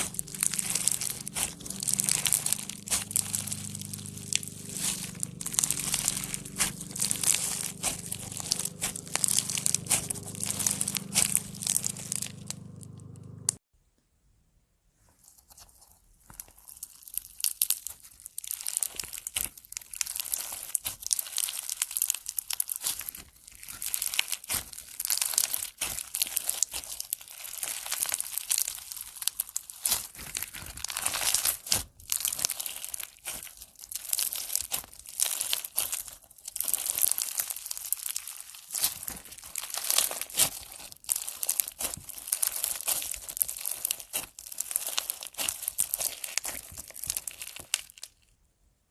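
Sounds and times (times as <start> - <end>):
low hum: 0.0 - 13.6
slime crackling pops: 0.0 - 13.6, 16.8 - 48.1.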